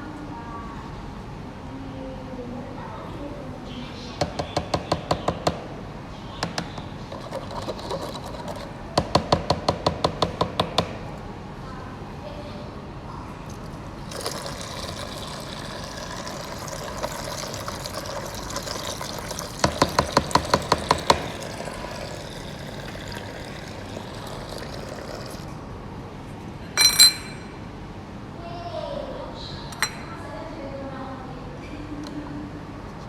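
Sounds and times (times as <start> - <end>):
water running and splashing: 13.5 - 25.5
ringing metal clink: 26.8 - 27.6, 29.8 - 30.1.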